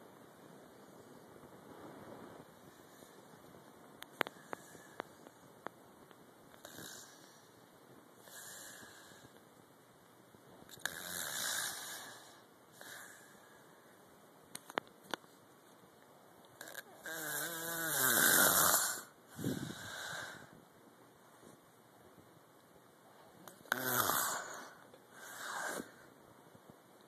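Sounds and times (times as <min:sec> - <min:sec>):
person snoring: 0:06.6 - 0:07.5, 0:08.2 - 0:09.3, 0:10.8 - 0:13.4, 0:16.6 - 0:20.5, 0:23.5 - 0:26.0.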